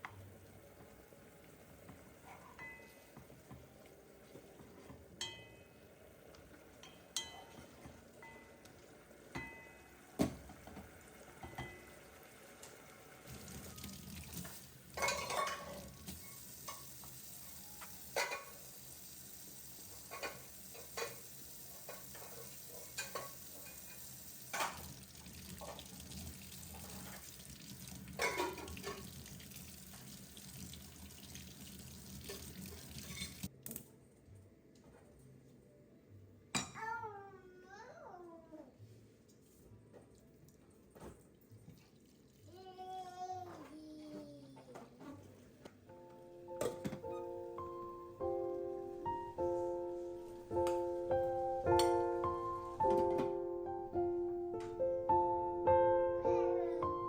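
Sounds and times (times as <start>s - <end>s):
dishes and utensils clinking: 2.2s - 3.2s, 4.8s - 5.8s, 6.8s - 8.6s, 9.3s - 10.8s, 11.4s - 12.0s, 14.4s - 17.0s, 17.8s - 18.7s, 20.0s - 26.0s, 28.1s - 29.3s, 32.1s - 33.5s, 46.6s - 47.3s.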